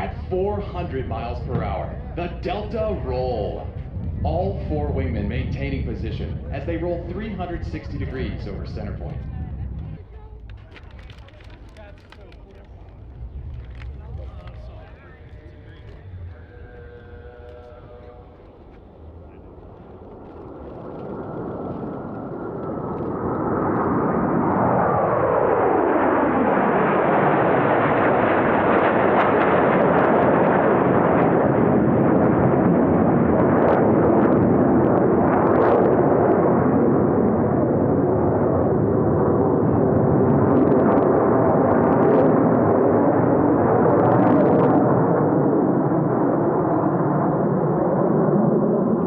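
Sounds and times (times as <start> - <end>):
loud jet engine noise: 0.0 - 49.0
jets passing with falling whine: 12.4 - 49.0.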